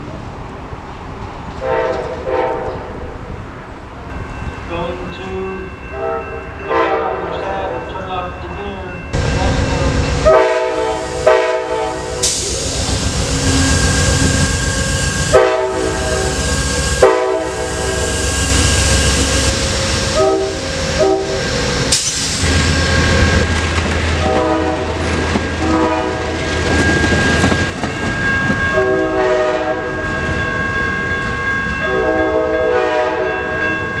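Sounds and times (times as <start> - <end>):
train horn blasts: 1.6 - 3.0, 5.9 - 7.8, 10.2 - 12.4, 13.5 - 21.6, 24.2 - 26.9, 28.7 - 30.0, 31.8 - 33.6
locomotive engine rumble: 7.8 - 28.9
wheels clattering on rails: 18.5 - 28.8.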